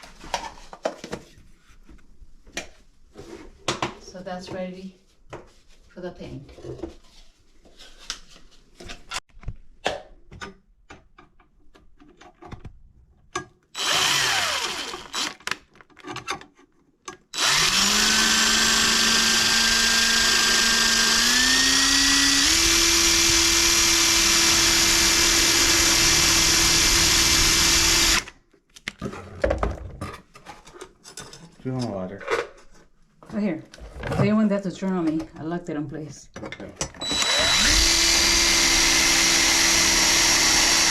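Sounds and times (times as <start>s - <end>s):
power drill running: 13.8s - 15.5s, 17.3s - 28.4s, 37.0s - 40.9s.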